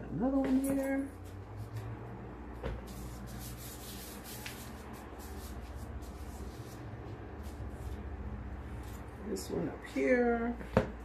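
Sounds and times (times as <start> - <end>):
hands rubbing dough: 1.2 - 9.3.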